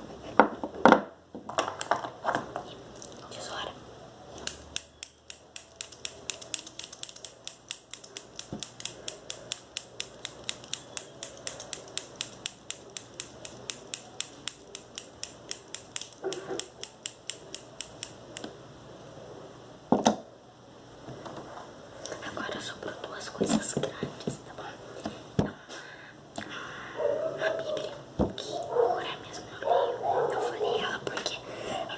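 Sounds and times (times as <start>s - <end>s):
scissors snipping: 4.4s - 18.5s.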